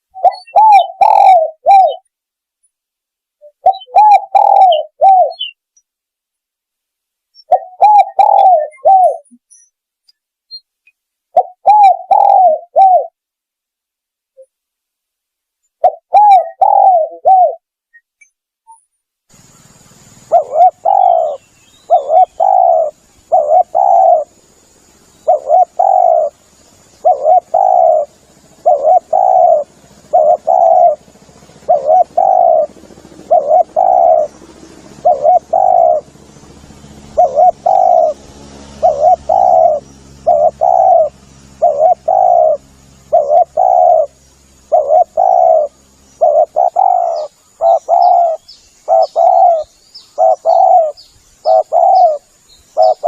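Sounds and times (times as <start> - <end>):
dove cooing: 0.0 - 2.1, 3.4 - 5.6, 7.4 - 9.4, 11.3 - 13.2, 15.8 - 17.6, 20.2 - 24.4, 25.2 - 36.2, 37.1 - 53.0
faint small bird chirps: 0.0 - 2.8, 3.4 - 5.9, 7.3 - 13.1, 15.7 - 31.0, 38.8 - 53.0
faint high hiss: 19.3 - 33.5, 34.2 - 53.0.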